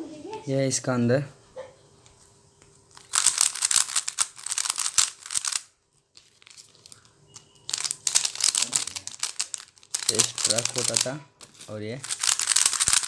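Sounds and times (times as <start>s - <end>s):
puzzle cube clicking: 3.0s - 5.7s, 7.7s - 13.0s.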